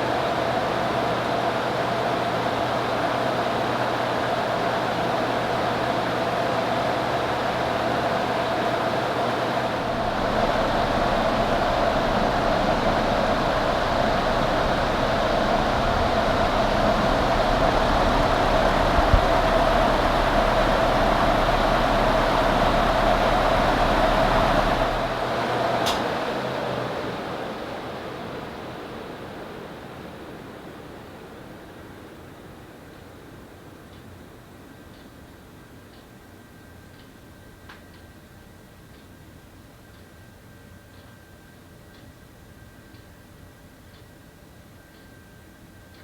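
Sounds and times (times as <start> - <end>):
ceiling fan motor hum: 0.0 - 46.0
fan blades whooshing: 7.2 - 29.6.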